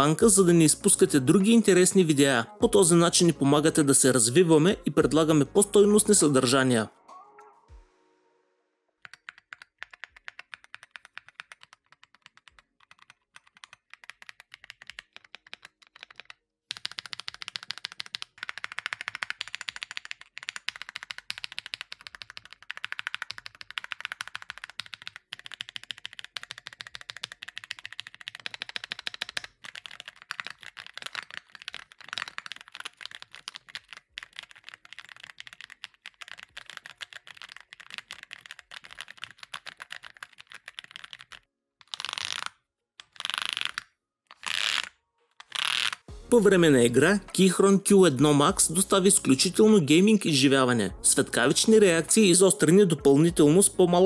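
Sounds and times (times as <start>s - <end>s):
mechanical keyboard typing clicks: 9.0s - 42.4s.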